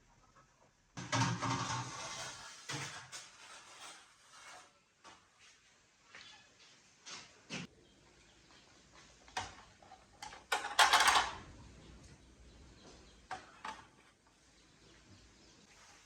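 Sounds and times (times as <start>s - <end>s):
kitchenware knocks and clinks: 1.0s - 2.0s, 9.3s - 11.5s
kitchenware clattering: 1.0s - 3.4s, 9.3s - 11.5s.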